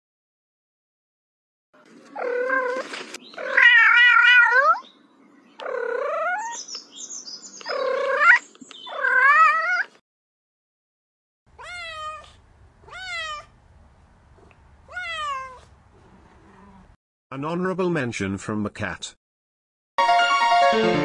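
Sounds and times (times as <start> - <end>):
cat meowing: 3.4 - 4.8, 5.6 - 6.6, 7.6 - 10.0, 11.5 - 13.6, 14.9 - 15.7.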